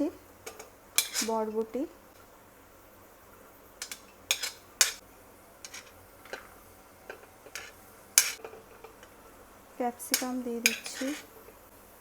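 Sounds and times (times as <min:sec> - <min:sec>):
metal utensils knocking on cookware: 0:00.4 - 0:01.6, 0:03.8 - 0:05.0, 0:05.6 - 0:09.1, 0:10.1 - 0:11.3.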